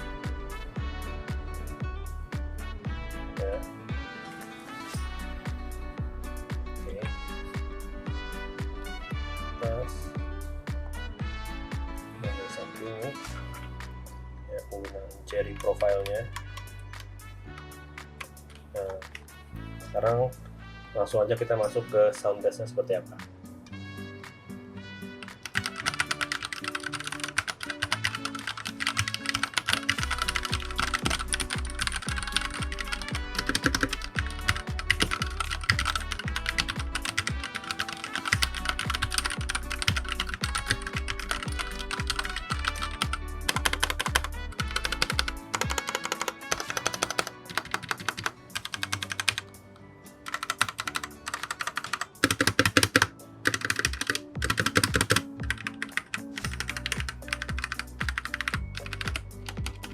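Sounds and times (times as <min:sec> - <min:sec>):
background music with steady beat: 0:00.0 - 0:59.9
fast mechanical keyboard typing: 0:25.4 - 0:49.4, 0:50.3 - 0:59.9.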